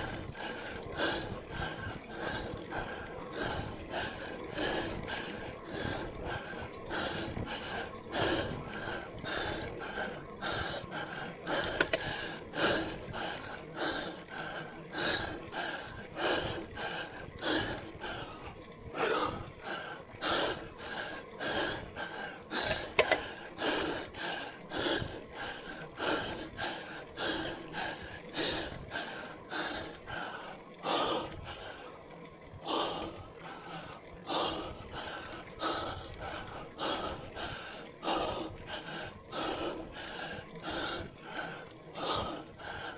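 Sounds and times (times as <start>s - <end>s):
heavy rhythmic breathing: 0.0s - 42.9s.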